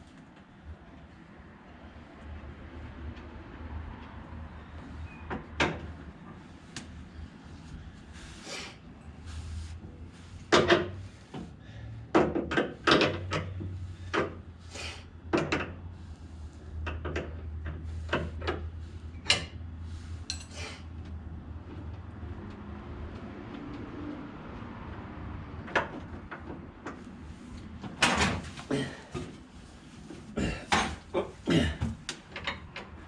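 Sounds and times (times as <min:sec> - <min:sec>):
hand tools clanking on metal: 0:20.2 - 0:20.8.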